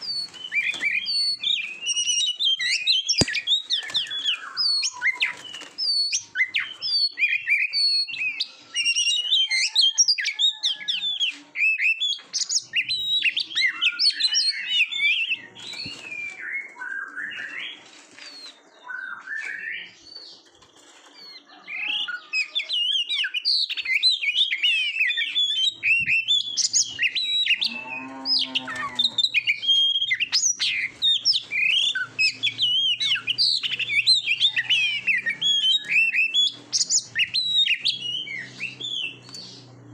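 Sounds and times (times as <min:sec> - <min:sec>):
bird singing whistles and trills: 0:00.0 - 0:20.4, 0:21.2 - 0:39.7.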